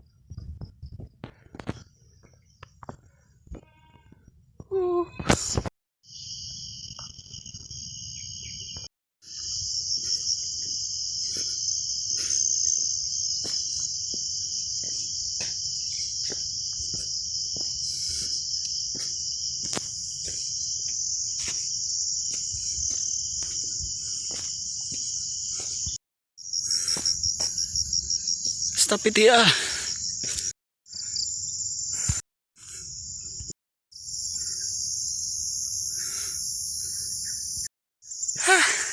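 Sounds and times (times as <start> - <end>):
insects shrilling: 9.3 - 25.9.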